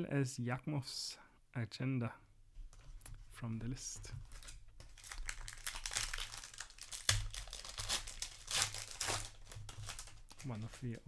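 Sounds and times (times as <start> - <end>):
plastic wrapper crinkling: 4.0 - 11.0.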